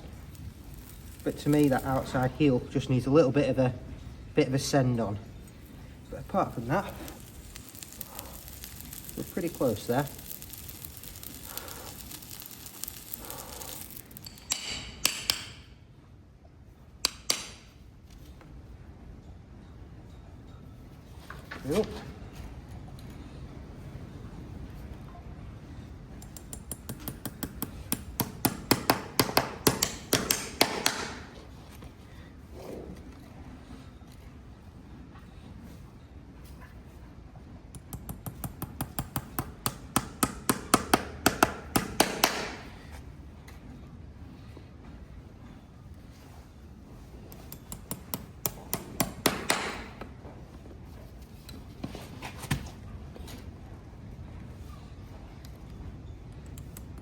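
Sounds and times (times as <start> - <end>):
hammer tapping horseshoe nail: 12.0 - 15.7, 17.0 - 17.6, 26.2 - 31.4, 37.8 - 42.7, 47.3 - 50.1.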